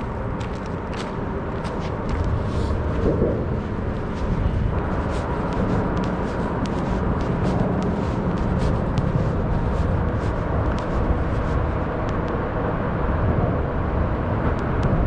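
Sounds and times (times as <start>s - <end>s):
footsteps walking: 0.0s - 11.8s
outdoor background noise: 0.0s - 15.0s.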